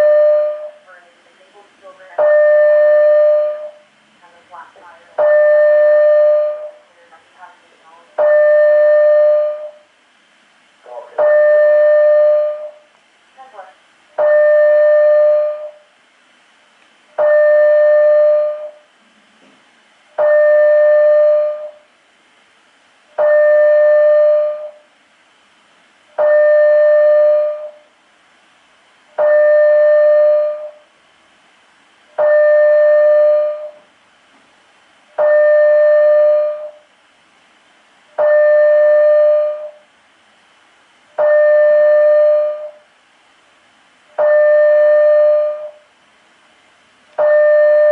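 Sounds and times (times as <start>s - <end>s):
fire alarm steady tone: 0.0s - 0.9s, 1.9s - 3.9s, 5.2s - 6.9s, 8.0s - 9.9s, 11.0s - 12.9s, 14.2s - 15.9s, 17.1s - 18.9s, 20.1s - 21.9s, 23.1s - 24.9s, 26.2s - 27.9s, 29.1s - 30.9s, 32.1s - 33.9s, 35.1s - 36.9s, 38.2s - 39.9s, 41.1s - 42.9s, 44.1s - 45.9s, 47.1s - 47.9s.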